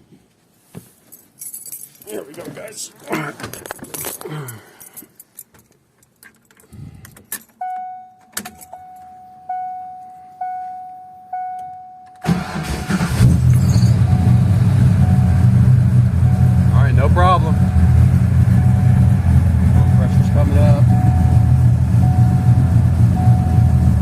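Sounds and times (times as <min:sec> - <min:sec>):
keys jingling: 0:01.1 - 0:02.7, 0:03.5 - 0:10.7
dashboard chime dinging: 0:07.6 - 0:12.3, 0:13.6 - 0:24.0
car engine starting and running: 0:07.6 - 0:24.0.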